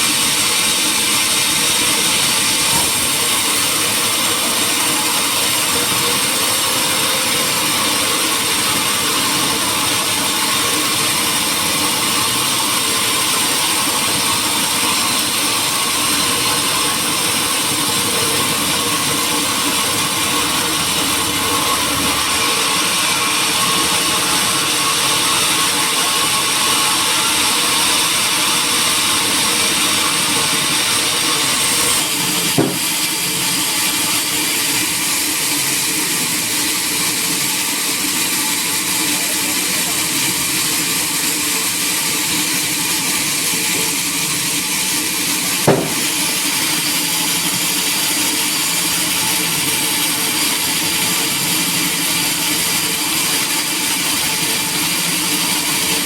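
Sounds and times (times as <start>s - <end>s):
sawmill machinery hissing: 0.0s - 43.7s, 44.4s - 48.8s
short sharp knocks: 32.6s - 33.1s, 45.7s - 46.3s.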